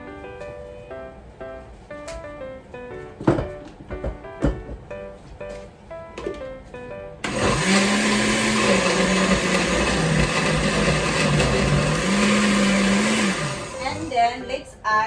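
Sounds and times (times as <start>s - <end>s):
background music with plucked notes: 0.0s - 13.7s
electric blender running: 7.2s - 14.4s.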